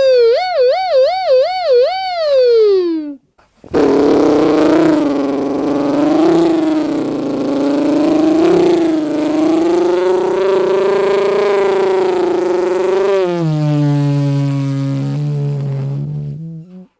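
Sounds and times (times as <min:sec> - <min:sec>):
beatbox mouth drone: 0:03.6 - 0:16.9.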